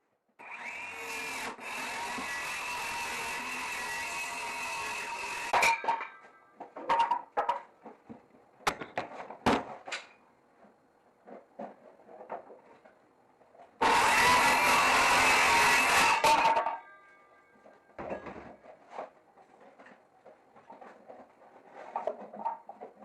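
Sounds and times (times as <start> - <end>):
wood and tools clattering: 1.2 - 23.0
power tool whining: 13.8 - 16.6.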